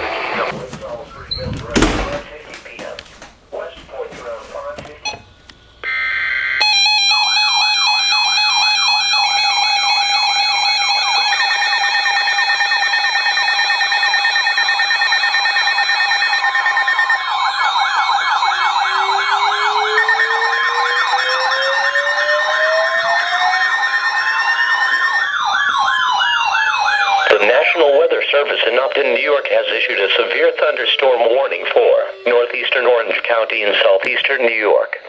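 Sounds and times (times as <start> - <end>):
steady siren tones: 5.8 - 34.0
rising siren wail: 5.9 - 33.3
fast warbling siren yelp: 5.9 - 33.5.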